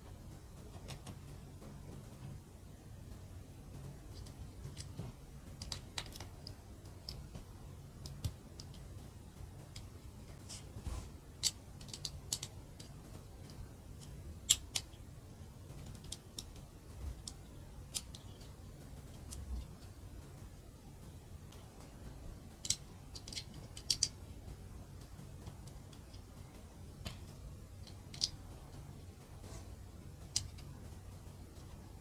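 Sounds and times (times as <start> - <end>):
faint low hum: 0.0 - 32.0
plastic bricks clicking together: 4.1 - 7.4, 8.0 - 9.0, 11.4 - 15.0, 15.7 - 19.7, 22.5 - 24.2, 27.0 - 28.9, 30.2 - 30.8.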